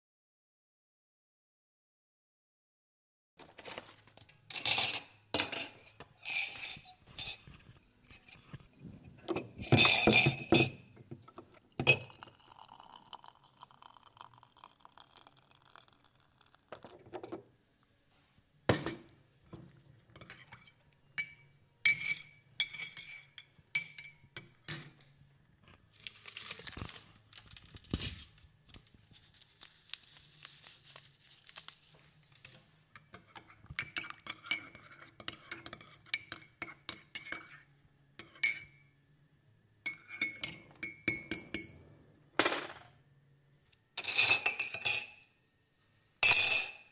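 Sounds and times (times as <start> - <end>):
cup and spoon clinking: 4.5 - 8.6, 9.3 - 10.9, 11.8 - 17.4, 20.1 - 25.0, 33.0 - 38.9, 39.9 - 41.7, 44.0 - 45.3, 46.2 - 46.9
spoon stirring against mug: 4.5 - 8.7, 9.3 - 10.8, 11.4 - 17.3, 20.1 - 25.0, 32.9 - 38.9, 39.9 - 41.7
liquid pouring into mug: 11.4 - 17.4.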